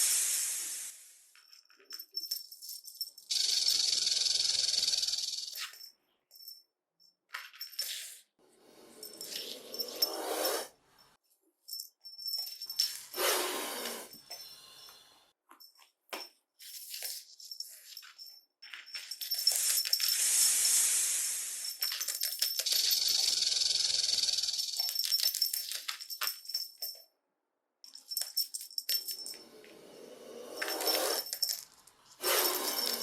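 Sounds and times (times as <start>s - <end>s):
snake hissing: 0.0s - 1.2s, 13.1s - 14.2s, 20.1s - 21.7s.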